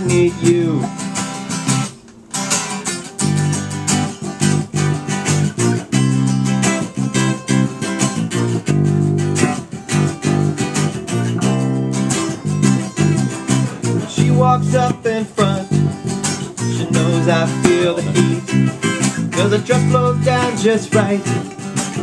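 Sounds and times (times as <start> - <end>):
bass guitar: 0.0 - 22.0
strummed guitar chords: 0.0 - 22.0
person singing: 14.0 - 15.8, 16.6 - 22.0.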